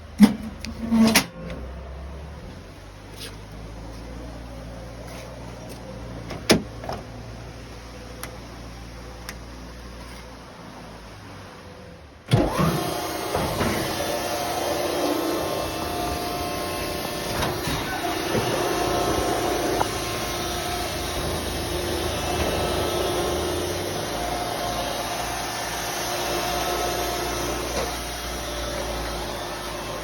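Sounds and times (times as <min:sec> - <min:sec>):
hydraulic power unit running: 0:12.3 - 0:30.0.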